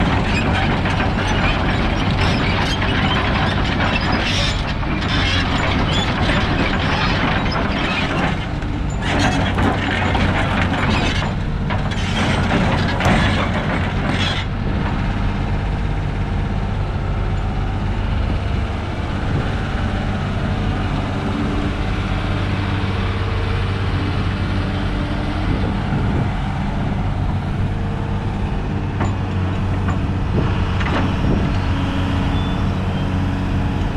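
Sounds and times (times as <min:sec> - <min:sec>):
mechanical clattering and rattling: 0:00.0 - 0:15.0
excavator diesel engine running: 0:00.0 - 0:33.9.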